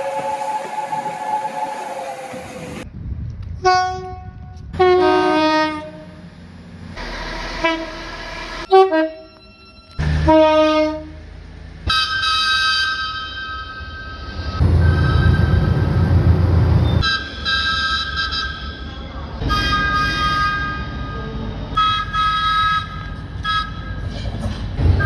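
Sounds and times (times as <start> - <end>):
held train whistle: 0.0 - 2.8, 19.5 - 24.2
train horn blasts: 3.6 - 6.1, 7.6 - 8.0, 8.7 - 9.3, 10.0 - 11.2.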